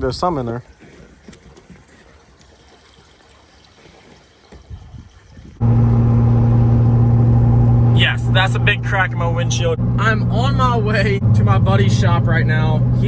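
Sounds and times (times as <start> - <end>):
vehicle driving drone from inside: 5.6 - 13.0.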